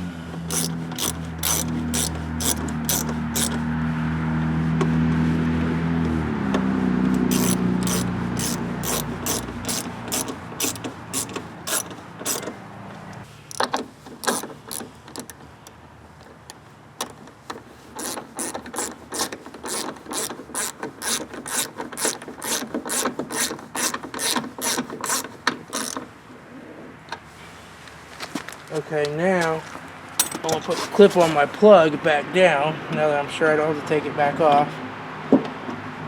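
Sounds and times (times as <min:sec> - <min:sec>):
ratchet wrench clicking: 0:00.5 - 0:03.6, 0:07.1 - 0:12.6, 0:13.5 - 0:15.8, 0:17.9 - 0:26.0.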